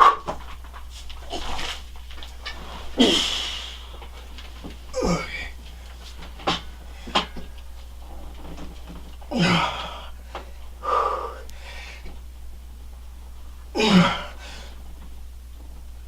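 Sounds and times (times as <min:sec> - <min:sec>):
steady low hum: 0:00.0 - 0:16.0
man grunting: 0:03.0 - 0:03.5, 0:04.9 - 0:05.6, 0:09.3 - 0:10.1, 0:13.8 - 0:14.7
man exhaling hard: 0:03.0 - 0:03.8, 0:10.8 - 0:12.0.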